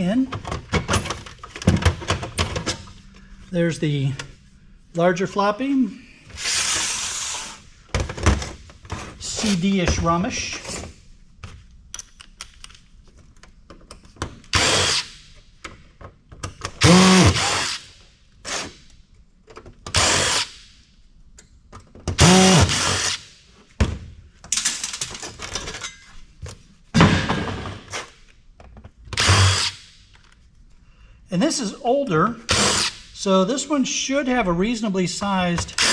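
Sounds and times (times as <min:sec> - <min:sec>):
small clicks and handling knocks: 0:11.4 - 0:14.5
cordless drill whirring: 0:16.8 - 0:17.9, 0:20.0 - 0:20.5, 0:22.2 - 0:23.2, 0:29.2 - 0:29.8, 0:32.5 - 0:33.0.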